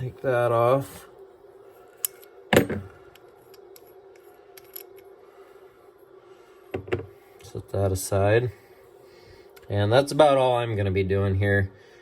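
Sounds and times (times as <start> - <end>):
steady low hum: 0.0 - 12.0
metal parts and wrench clinking: 2.0 - 5.0.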